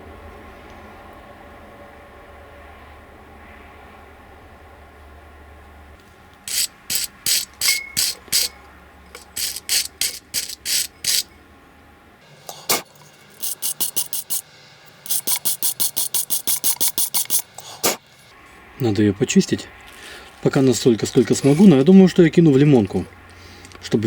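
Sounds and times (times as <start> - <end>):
scraping strokes on rusty metal: 6.4 - 11.4, 12.4 - 18.3.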